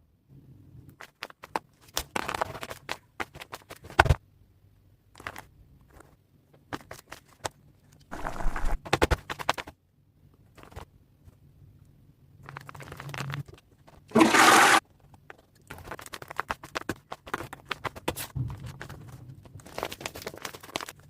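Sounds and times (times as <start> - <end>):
paper rustling and scraping: 8.1 - 9.7
paper crinkling: 14.9 - 21.0.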